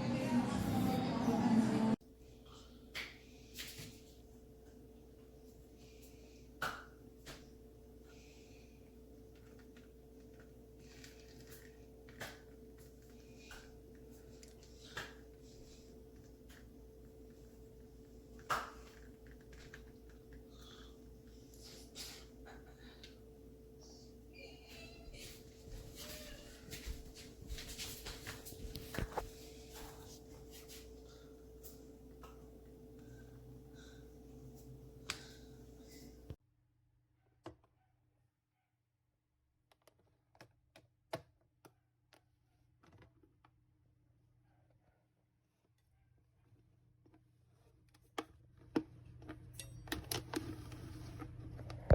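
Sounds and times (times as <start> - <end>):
faint steady hum: 0.0 - 36.4.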